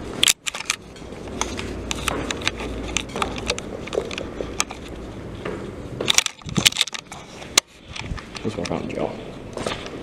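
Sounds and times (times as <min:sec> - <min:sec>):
footsteps crunching on gritty floor: 0:09.6 - 0:10.0.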